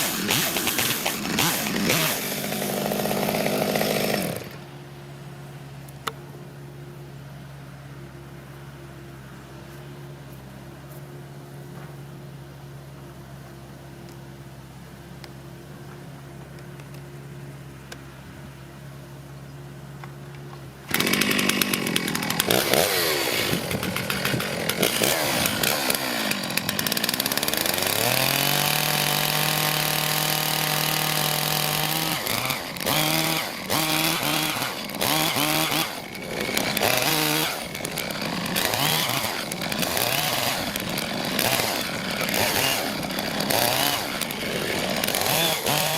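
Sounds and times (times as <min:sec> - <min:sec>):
chainsaw revving: 0:00.0 - 0:04.7, 0:20.8 - 0:45.9.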